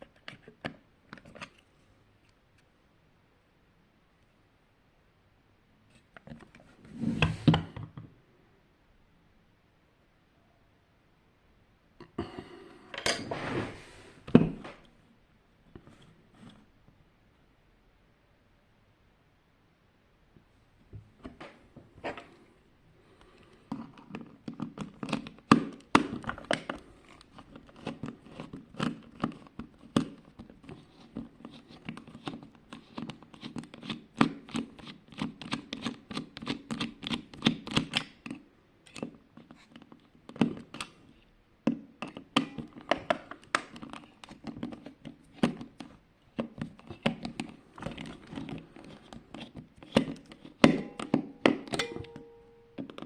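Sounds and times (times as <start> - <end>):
clicks and taps of hard plastic: 41.6 - 51.8.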